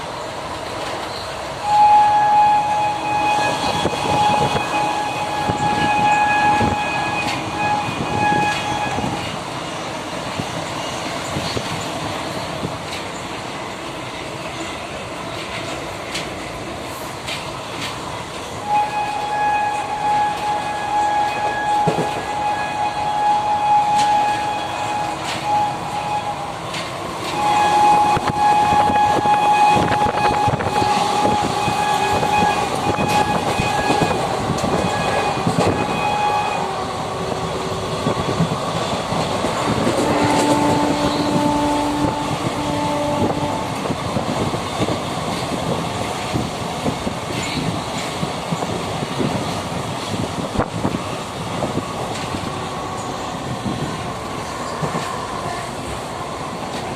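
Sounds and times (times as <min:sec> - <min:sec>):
train wheels clattering on rails: 0:00.0 - 0:56.9
train horn blasts: 0:01.6 - 0:09.4, 0:18.6 - 0:38.4, 0:39.6 - 0:44.2.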